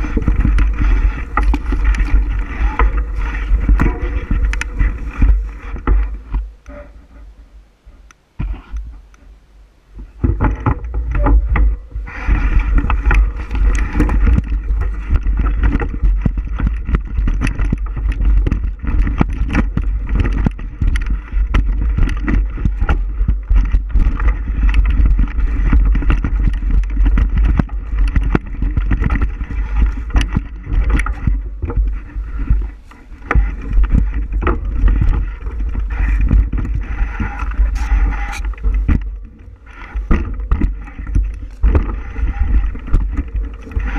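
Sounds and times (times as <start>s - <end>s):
bicycle rattles and knocks: 0.0s - 7.2s, 10.0s - 43.9s
steady higher hum: 0.0s - 16.8s
wind rumble on microphone: 0.0s - 43.9s.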